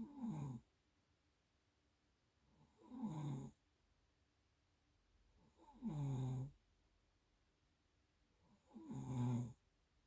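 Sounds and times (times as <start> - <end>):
low buzzing snore: 2.6 - 3.6, 5.5 - 6.6, 8.6 - 9.6.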